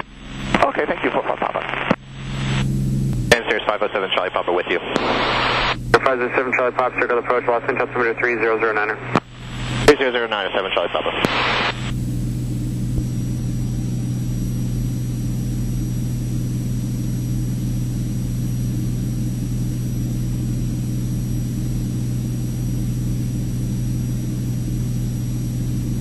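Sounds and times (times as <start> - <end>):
aircraft engine and propeller droning: 11.4 - 26.0.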